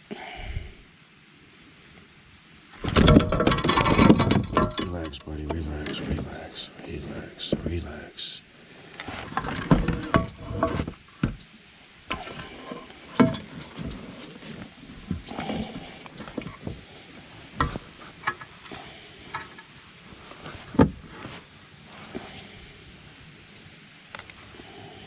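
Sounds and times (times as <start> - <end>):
knocks and thumps in a kayak: 2.8 - 5.0, 9.3 - 11.4.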